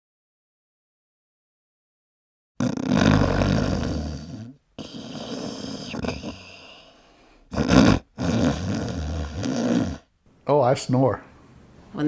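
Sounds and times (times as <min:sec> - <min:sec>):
loud human snoring: 0:02.6 - 0:10.1.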